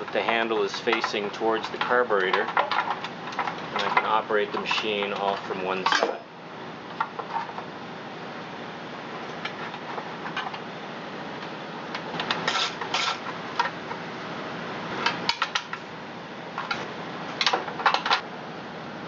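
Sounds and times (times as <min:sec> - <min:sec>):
metal tools clinking and rattling: 0:00.1 - 0:06.2.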